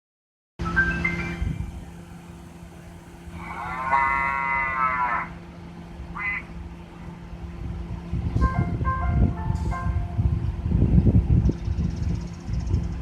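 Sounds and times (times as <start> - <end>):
steady low hum: 0.6 - 13.0
car horn playing cow moo: 3.5 - 5.4, 6.2 - 6.5.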